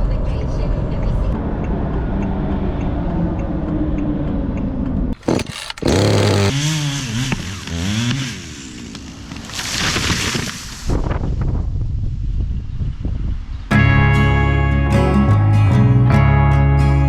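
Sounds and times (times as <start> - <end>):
small gasoline engine revving: 5.2 - 10.6.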